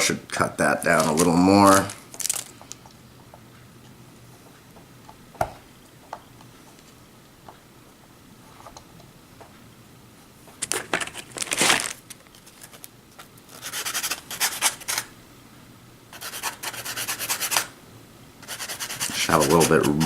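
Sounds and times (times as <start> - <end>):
sandpaper rubbing plastic: 13.5 - 15.1, 16.2 - 17.7, 18.4 - 20.0.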